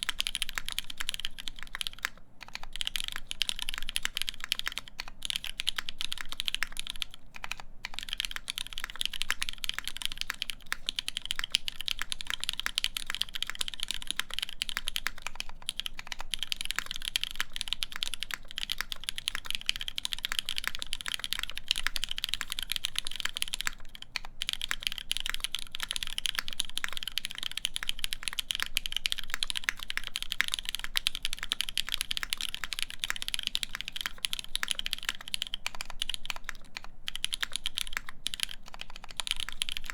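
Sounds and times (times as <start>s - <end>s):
fast typing on mechanical keyboard: 0.0s - 39.9s.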